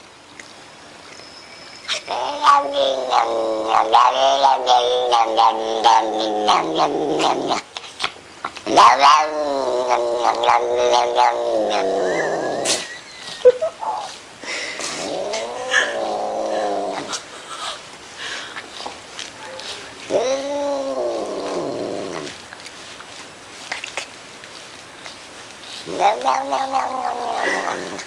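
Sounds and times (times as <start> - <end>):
cat yowling: 1.9 - 7.6, 8.7 - 12.8, 15.0 - 17.2, 19.6 - 22.4, 25.8 - 28.0.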